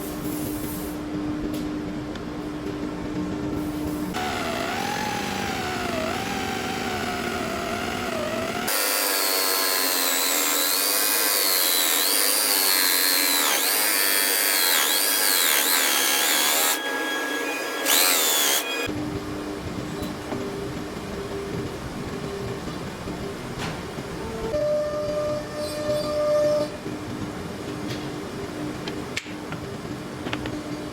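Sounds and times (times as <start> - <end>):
power tool motor whining: 4.2 - 18.9.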